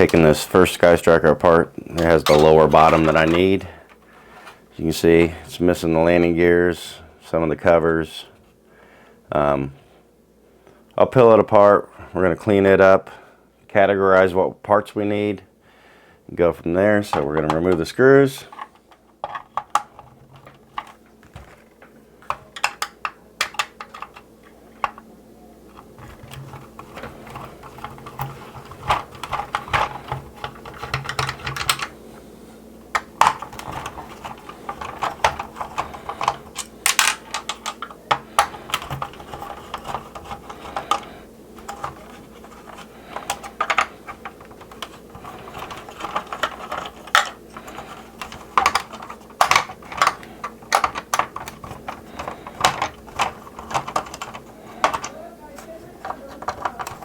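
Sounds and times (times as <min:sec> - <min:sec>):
screwdriver and plastic parts clicking: 0:02.0 - 0:04.6, 0:18.5 - 0:24.2, 0:24.8 - 0:25.1, 0:25.7 - 0:31.9, 0:33.0 - 0:57.0.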